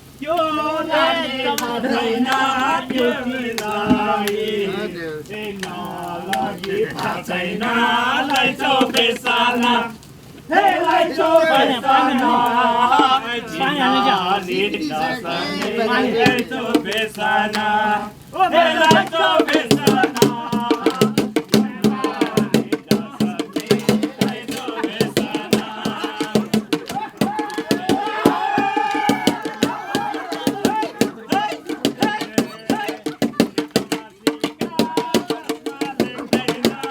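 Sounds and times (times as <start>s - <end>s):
group singing a chant: 0.1s - 36.9s
sharp percussion strikes: 18.9s - 36.9s.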